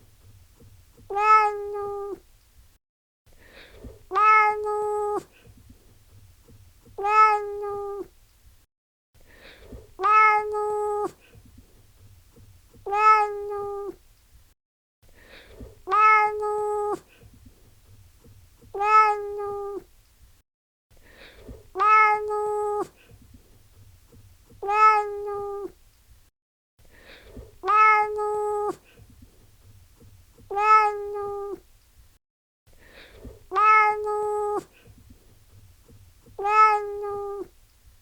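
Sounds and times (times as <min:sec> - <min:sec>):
cat meowing: 0:01.0 - 0:02.2, 0:04.1 - 0:05.2, 0:06.9 - 0:08.1, 0:10.0 - 0:11.2, 0:12.8 - 0:14.0, 0:15.8 - 0:17.0, 0:18.7 - 0:19.9, 0:21.8 - 0:22.9, 0:24.6 - 0:25.8, 0:27.6 - 0:28.8, 0:30.5 - 0:31.6, 0:33.5 - 0:34.7, 0:36.3 - 0:37.5.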